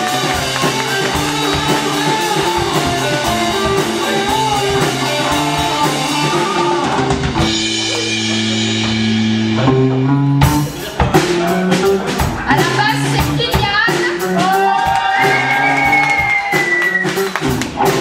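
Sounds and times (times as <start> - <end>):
drum hits: 0.0 - 18.0
electric guitar: 0.0 - 18.0
rock band playing: 0.0 - 18.0.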